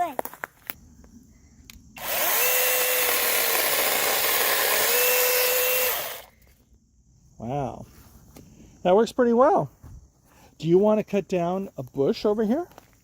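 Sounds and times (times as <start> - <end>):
mini chainsaw running: 2.0 - 6.3.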